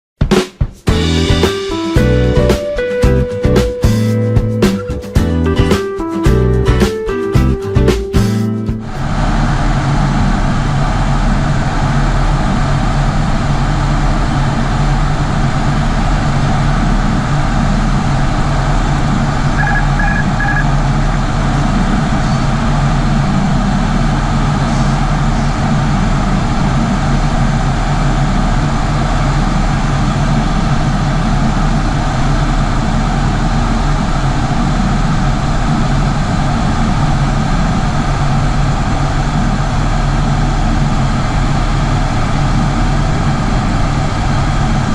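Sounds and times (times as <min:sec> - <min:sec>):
turboprop engines droning: 0:00.9 - 0:44.9
short high beeps: 0:19.6 - 0:20.7.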